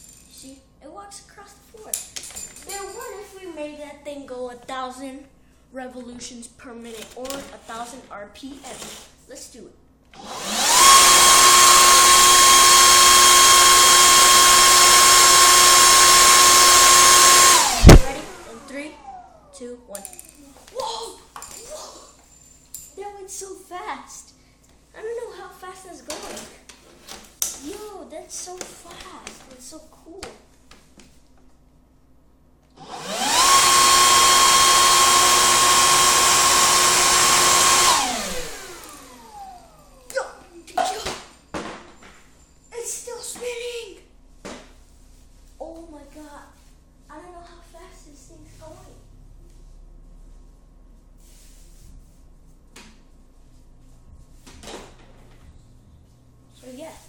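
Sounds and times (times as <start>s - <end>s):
small electric motor whining: 10.2s - 19.5s, 32.8s - 40.0s.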